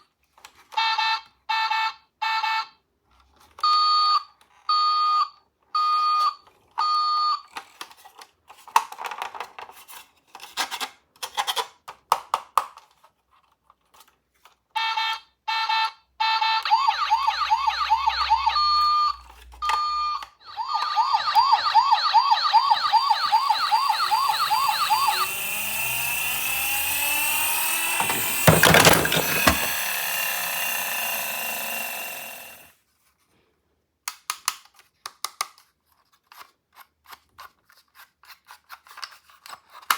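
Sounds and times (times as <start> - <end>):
toy electronic siren: 14.8 - 32.6
clicks: 23.2 - 32.6.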